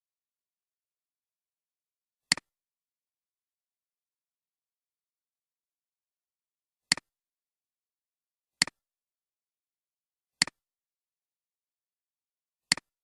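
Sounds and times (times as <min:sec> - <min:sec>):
computer mouse clicks: 0:02.3 - 0:02.5, 0:06.9 - 0:07.1, 0:12.7 - 0:13.0.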